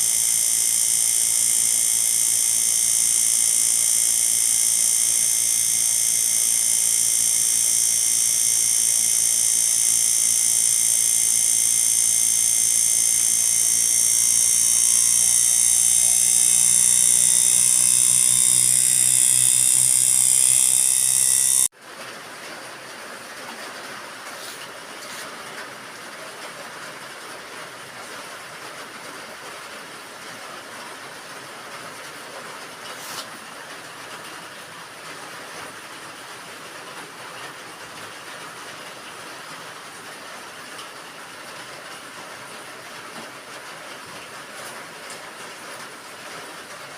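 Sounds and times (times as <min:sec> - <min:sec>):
machine high-pitched whine: 0:00.0 - 0:21.7.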